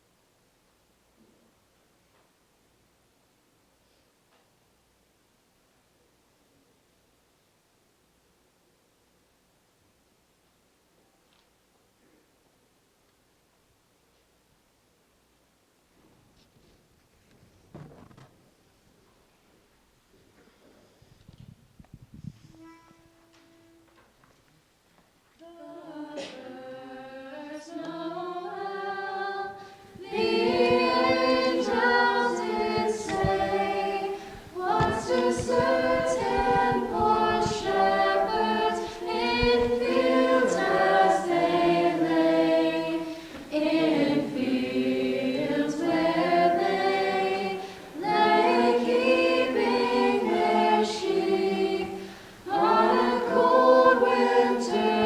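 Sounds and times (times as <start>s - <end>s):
a cappella group singing in harmony: 25.4s - 55.0s.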